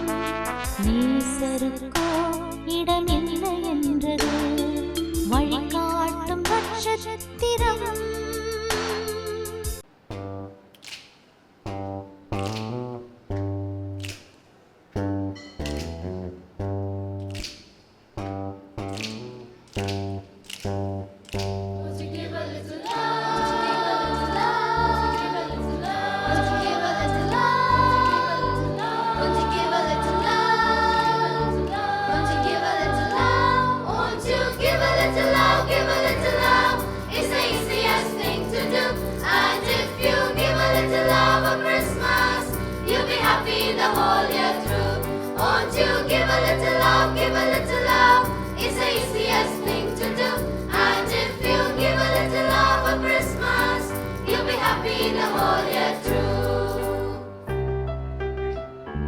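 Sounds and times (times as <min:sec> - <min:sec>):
choir singing: 0:21.9 - 0:57.5.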